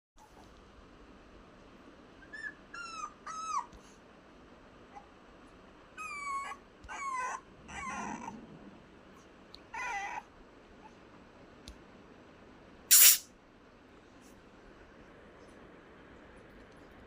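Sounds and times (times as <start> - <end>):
puppy whining: 2.2 - 4.0, 5.9 - 8.8, 9.6 - 11.0
brief loud hissing: 12.9 - 13.3.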